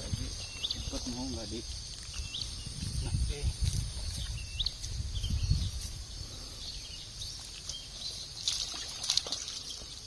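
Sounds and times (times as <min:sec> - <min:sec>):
high insect hiss: 0:00.0 - 0:10.0
faint trickling water: 0:07.4 - 0:10.0.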